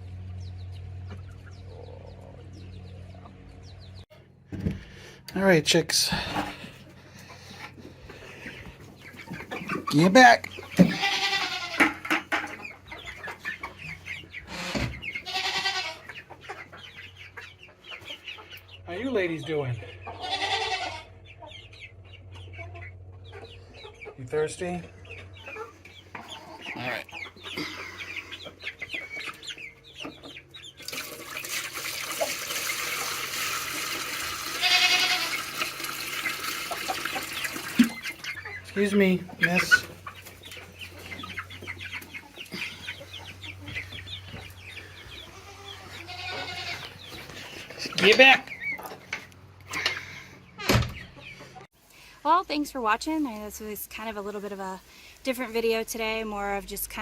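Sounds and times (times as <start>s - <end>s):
chickens clucking: 0.0s - 57.0s
chicken squawking calls: 6.2s - 18.6s, 19.9s - 21.5s, 34.4s - 49.0s
water pouring: 30.8s - 38.3s.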